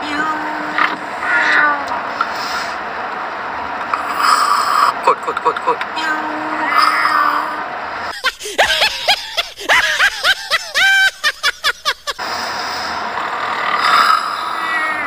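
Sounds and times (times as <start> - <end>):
high-pitched giggling: 4.9 - 6.0, 8.1 - 12.2.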